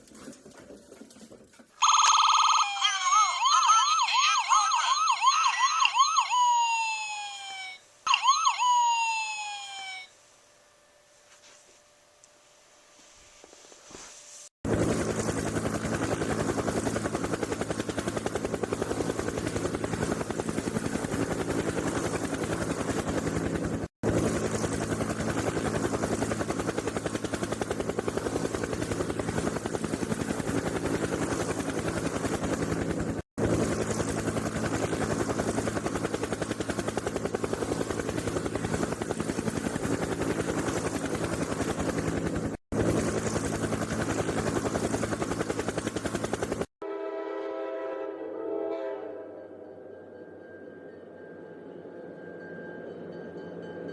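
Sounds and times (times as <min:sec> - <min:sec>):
helicopter rotor chopping: 0:14.6 - 0:46.7.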